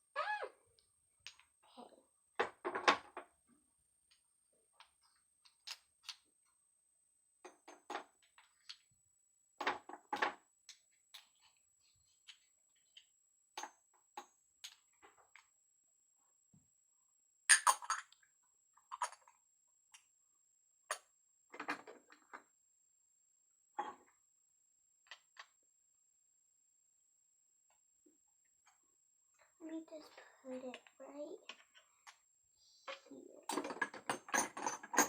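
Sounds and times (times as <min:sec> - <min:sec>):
plastic toys clicking and knocking: 0:01.2 - 0:01.5, 0:02.4 - 0:03.3, 0:04.8 - 0:06.3, 0:07.4 - 0:08.9, 0:09.6 - 0:15.5, 0:18.8 - 0:19.4, 0:20.9 - 0:22.4, 0:30.0 - 0:32.2, 0:32.9 - 0:35.0
plastic toys clattering: 0:33.0 - 0:35.0.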